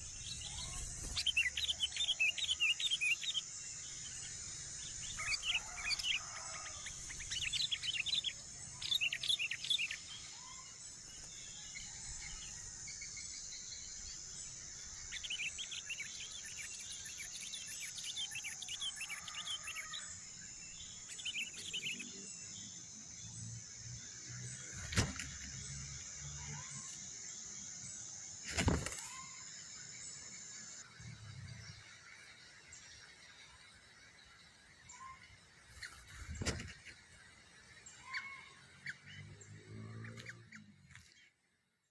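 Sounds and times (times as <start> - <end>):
small birds chirping: 0.0 - 41.9.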